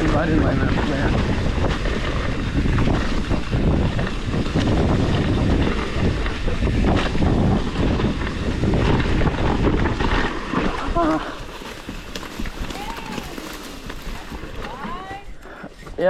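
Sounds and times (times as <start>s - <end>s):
bike knocks and rattles: 0.0s - 15.3s
bike low rumble: 0.0s - 16.0s
wind buffeting microphone: 0.0s - 16.0s.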